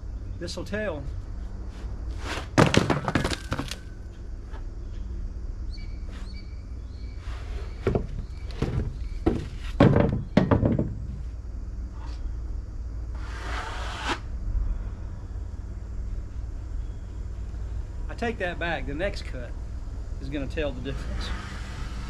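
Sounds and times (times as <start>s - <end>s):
thunks and knocks: 2.5s - 3.8s, 7.8s - 11.3s
steady low rumble: 14.2s - 22.0s.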